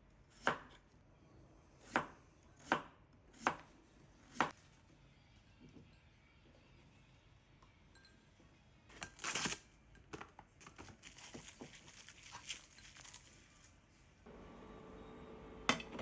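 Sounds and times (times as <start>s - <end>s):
rustling or tearing: 9.2s - 9.6s, 10.9s - 13.9s.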